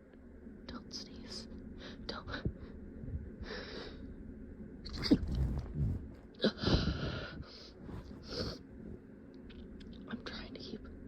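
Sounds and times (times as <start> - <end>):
breathy inhale: 3.4 - 4.1.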